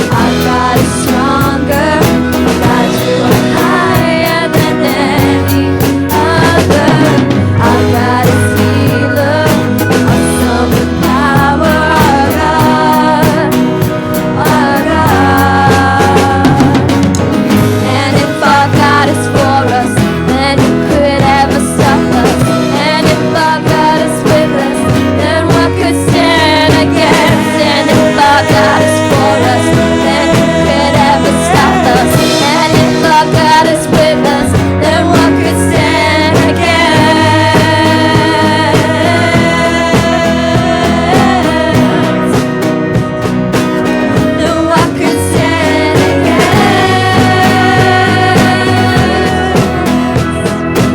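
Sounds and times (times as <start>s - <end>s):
drums steady beat: 0.0s - 50.9s
person singing: 0.0s - 50.9s
rock band playing: 0.0s - 50.9s.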